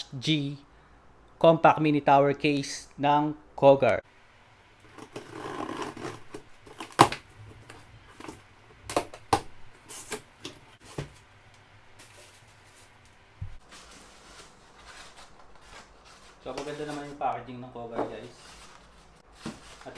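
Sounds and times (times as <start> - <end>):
cardboard box and foam handled: 4.8 - 11.3, 18.1 - 19.9.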